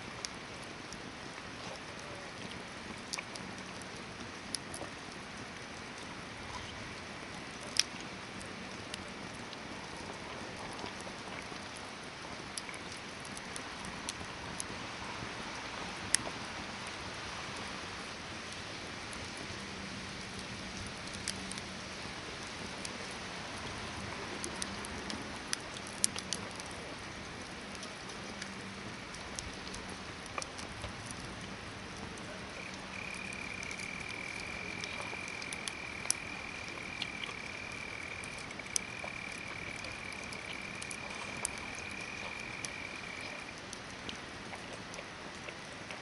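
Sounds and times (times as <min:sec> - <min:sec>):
campfire crackling and popping: 0:00.0 - 0:46.0.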